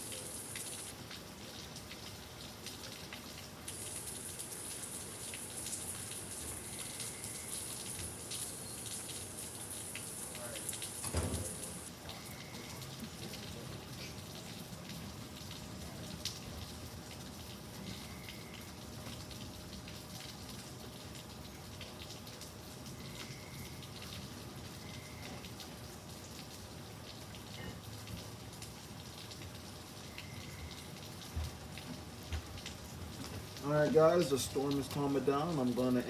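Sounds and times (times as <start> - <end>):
steady rain: 0.0 - 36.0.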